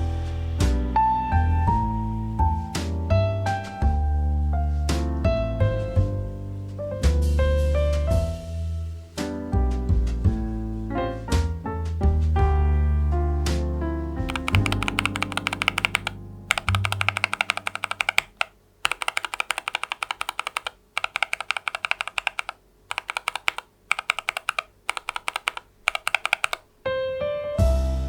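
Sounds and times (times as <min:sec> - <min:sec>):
piano music: 0:00.0 - 0:18.4, 0:26.0 - 0:28.0
keyboard key clicks: 0:14.3 - 0:26.7.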